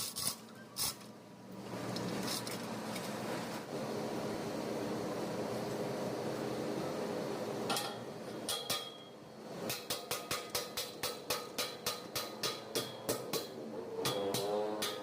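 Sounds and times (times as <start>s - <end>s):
sharp metallic taps: 7.7s - 9.1s.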